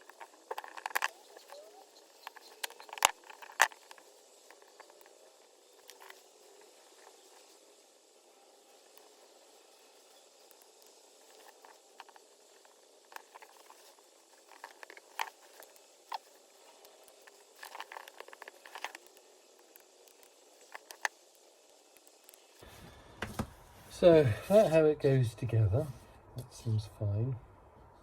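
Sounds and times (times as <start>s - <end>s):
small plastic and metal clicks: 0.0s - 7.5s, 10.4s - 22.5s.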